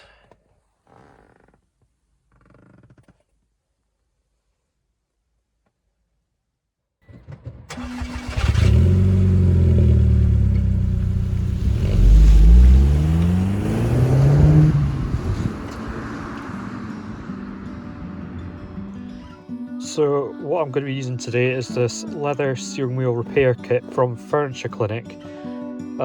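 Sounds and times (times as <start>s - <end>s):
car engine starting and revving: 7.1s - 19.0s.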